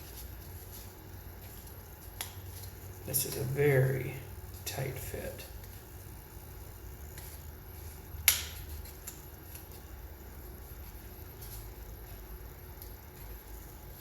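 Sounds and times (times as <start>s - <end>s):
faint handling and rubbing: 0.0s - 3.8s.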